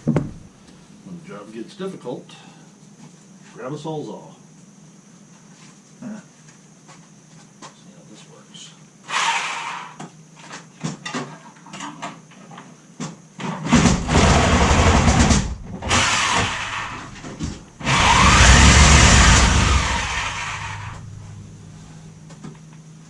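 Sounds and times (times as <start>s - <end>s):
reciprocating saw cutting: 13.8s - 21.5s.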